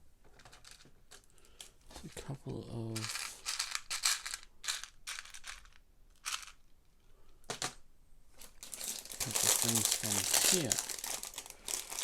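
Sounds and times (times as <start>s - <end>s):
plastic pieces clattering: 2.9s - 6.7s, 8.4s - 12.0s.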